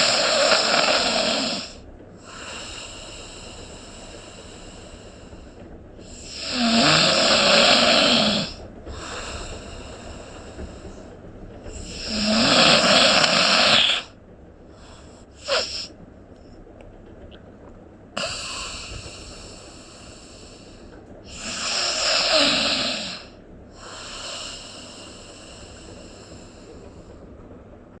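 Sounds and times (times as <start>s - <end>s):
person snoring: 0.0s - 3.0s, 6.2s - 9.4s, 11.7s - 14.1s, 14.9s - 15.9s, 18.2s - 19.2s, 21.3s - 25.6s.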